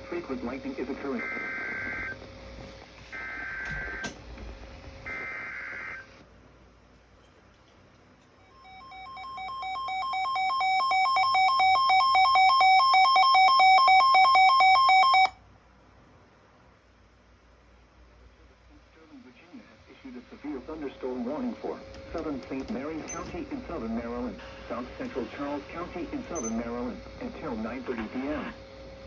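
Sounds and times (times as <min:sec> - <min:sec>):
two-tone attention signal: 0:08.5 - 0:15.3.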